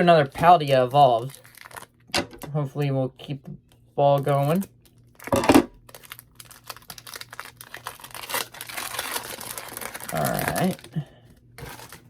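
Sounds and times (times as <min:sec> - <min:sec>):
foil wrapper crinkling: 0:00.2 - 0:02.0, 0:04.2 - 0:12.0.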